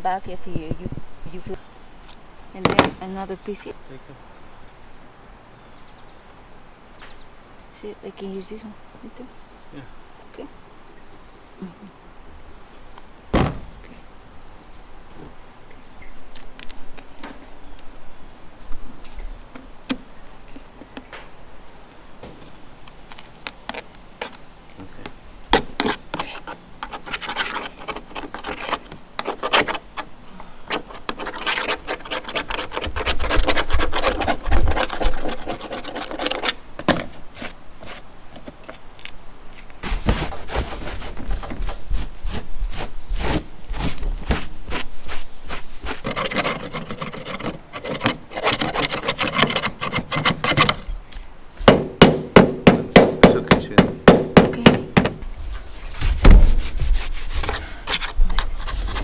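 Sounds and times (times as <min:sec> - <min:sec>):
brush strokes rubbing on roof: 0:25.6 - 0:38.1, 0:39.8 - 0:50.8, 0:55.6 - 0:59.0.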